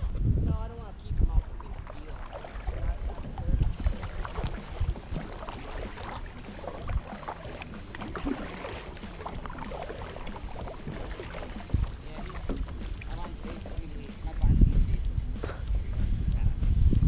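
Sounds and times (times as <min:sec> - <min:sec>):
low rumble: 0:00.0 - 0:17.0
small water splashes: 0:00.9 - 0:17.0
knocks against kayak hull: 0:03.7 - 0:17.0.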